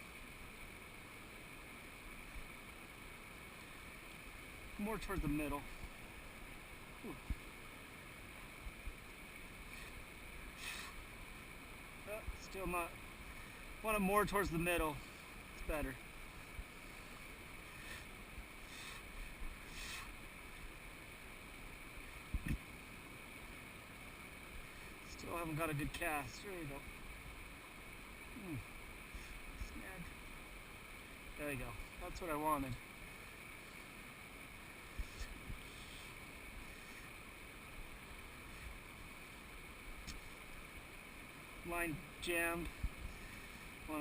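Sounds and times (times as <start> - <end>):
river water flowing: 0.0 - 44.0
soft hisses: 0.0 - 44.0
faint ticks and clicks: 22.2 - 22.7, 40.0 - 40.5.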